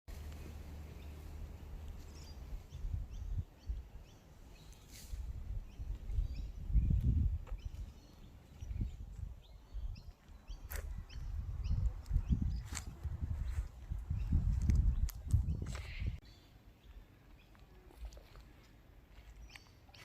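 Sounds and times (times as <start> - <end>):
small birds chirping: 0.1 - 20.0.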